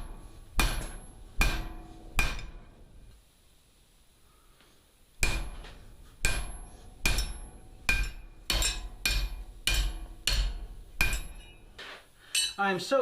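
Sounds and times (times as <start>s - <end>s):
hammer striking steel on anvil: 0.0s - 2.8s, 5.2s - 11.7s, 12.3s - 12.7s.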